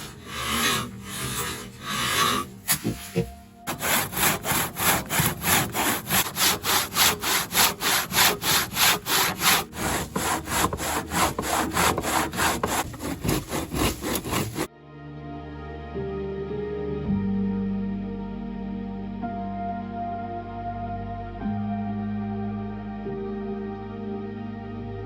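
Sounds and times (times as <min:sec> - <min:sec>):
handsaw cutting wood: 0:00.0 - 0:14.7.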